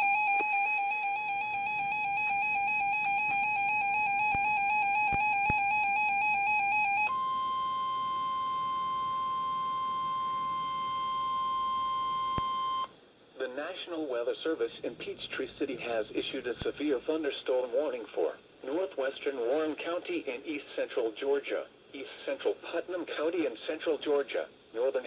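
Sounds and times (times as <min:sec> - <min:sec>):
steady warning alarm tone: 0:00.0 - 0:12.9.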